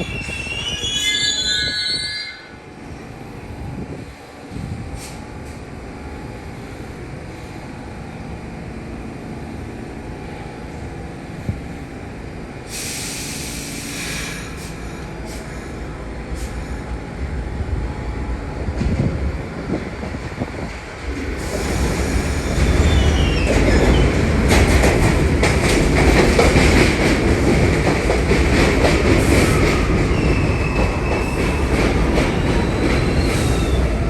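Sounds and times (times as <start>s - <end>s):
subway train rumbling: 0.0s - 34.0s
burst of hiss: 12.7s - 15.4s.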